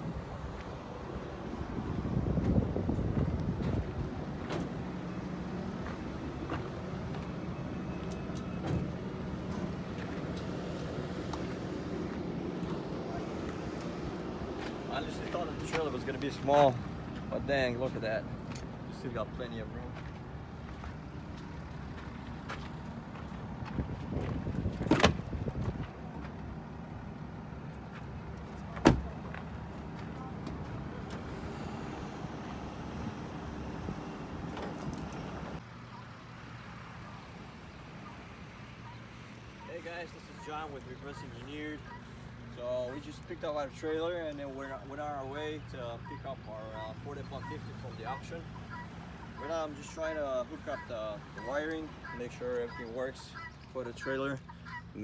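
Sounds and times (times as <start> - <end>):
wind buffeting microphone: 0.0 - 4.9, 23.5 - 26.0
vehicle engine humming: 0.0 - 55.0.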